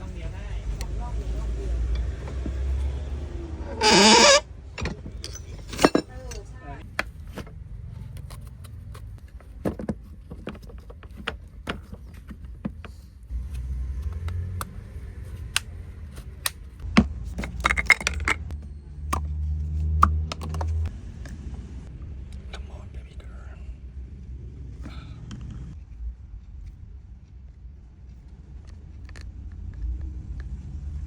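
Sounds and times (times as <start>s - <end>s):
small parts and tools clinking: 3.8s - 6.9s, 17.3s - 19.3s.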